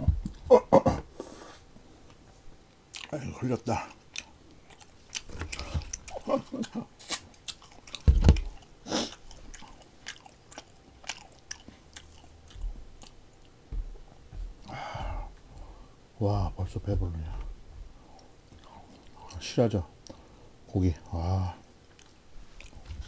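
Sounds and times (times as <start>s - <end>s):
man chewing and biting: 2.9s - 3.1s, 3.8s - 14.7s.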